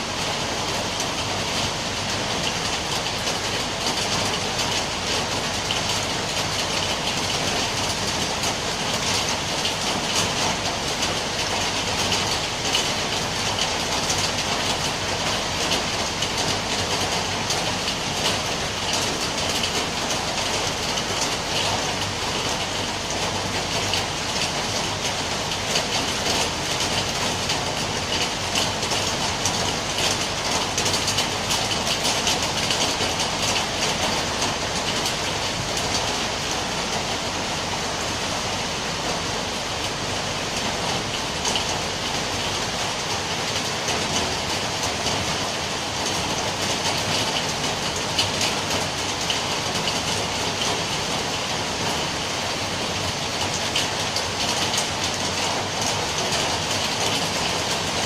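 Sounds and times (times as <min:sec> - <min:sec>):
steady rain patter: 0:00.0 - 0:58.0.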